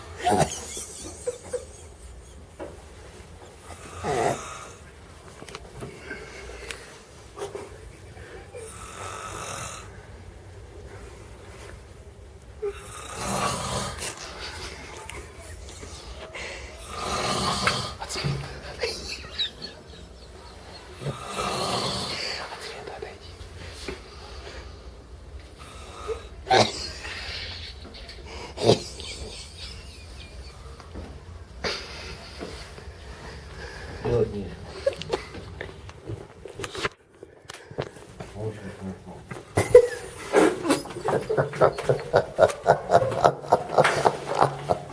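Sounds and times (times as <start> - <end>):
person snoring: 3.7 - 4.9, 8.6 - 10.0, 12.6 - 14.4, 16.7 - 18.1, 21.0 - 22.7.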